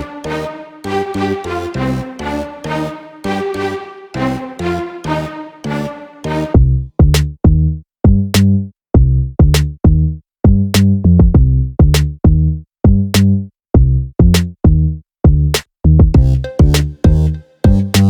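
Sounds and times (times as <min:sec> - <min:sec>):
electronic music with drum machine: 0:16.2 - 0:18.0.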